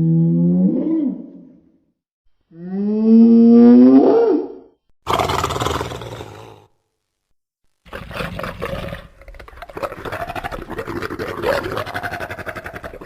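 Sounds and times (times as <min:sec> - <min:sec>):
creature roar: 0:02.6 - 0:06.7.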